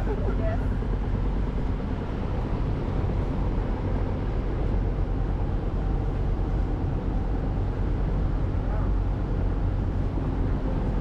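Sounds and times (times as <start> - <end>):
boat engine humming: 0.0 - 11.0.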